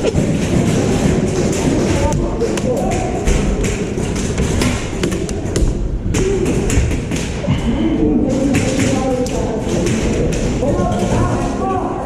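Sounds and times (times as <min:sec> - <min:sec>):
bbs striking walls and props: 0:00.0 - 0:07.6.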